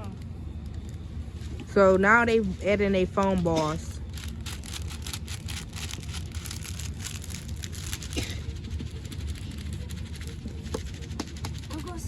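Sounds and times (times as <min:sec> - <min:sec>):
steady low rumble: 0:00.0 - 0:12.0
crackling of foam beads in slime: 0:04.0 - 0:09.8.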